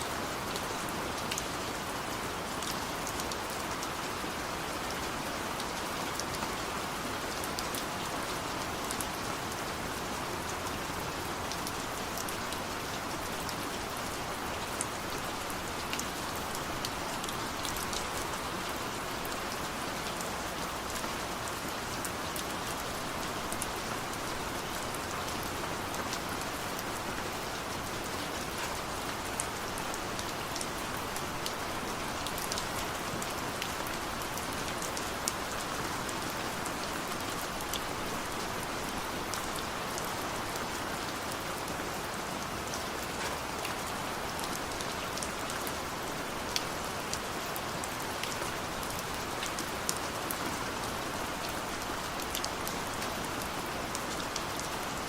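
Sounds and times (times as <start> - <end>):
raindrops ticking on a surface: 0.1 - 55.0
heavy rain hissing: 19.9 - 34.6.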